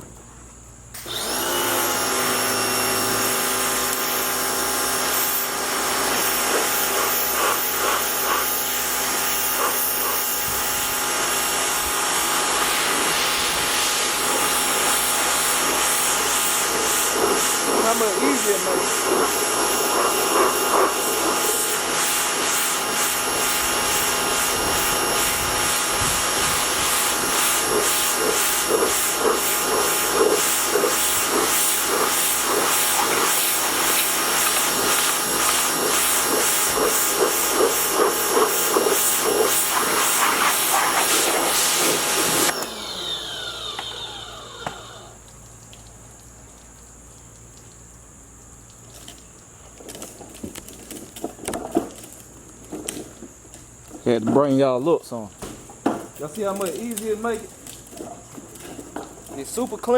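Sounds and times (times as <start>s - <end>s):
pressure washer motor whining: 0.9s - 45.4s
water spray hissing: 1.0s - 47.9s.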